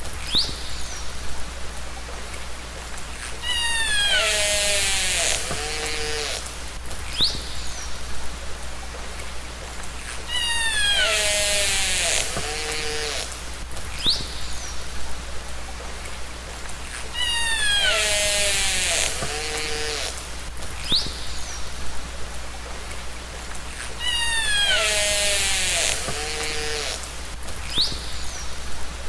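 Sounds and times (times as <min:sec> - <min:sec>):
steady underwater hiss: 0:00.0 - 0:29.0
orca pulsed calls: 0:03.2 - 0:06.8, 0:10.0 - 0:13.6, 0:16.9 - 0:20.5, 0:23.7 - 0:27.2.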